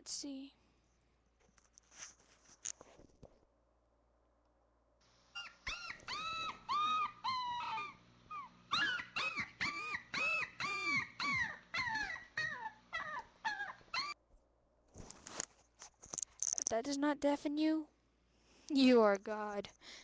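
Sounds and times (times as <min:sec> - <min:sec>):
dog yelping: 0:05.4 - 0:14.2.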